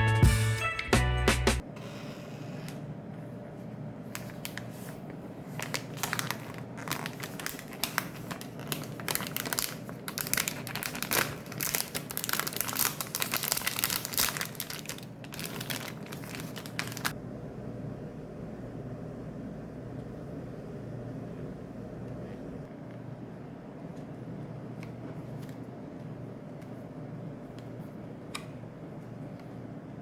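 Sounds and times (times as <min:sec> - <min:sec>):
plastic packaging crinkling: 0:04.1 - 0:17.2.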